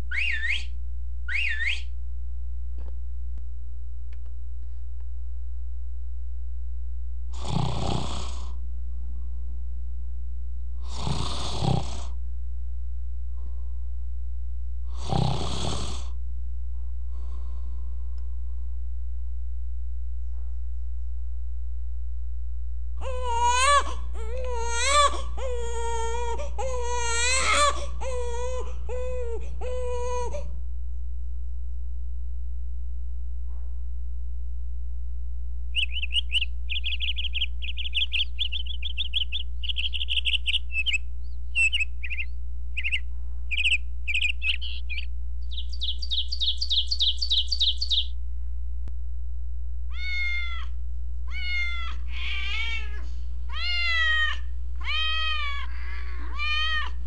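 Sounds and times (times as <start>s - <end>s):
steady low hum: 0.0s - 57.0s
small bird chirping and trilling: 0.1s - 0.7s, 1.3s - 1.8s, 35.8s - 48.1s
baby crying: 23.0s - 30.5s, 53.6s - 57.0s
cat meowing: 49.9s - 57.0s.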